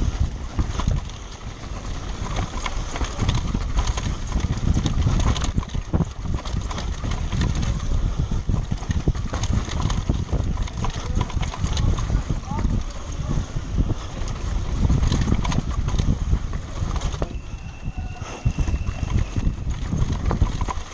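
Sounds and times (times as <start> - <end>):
bike rattling over rough ground: 0.0 - 20.9
wind and rolling rumble: 0.0 - 20.9.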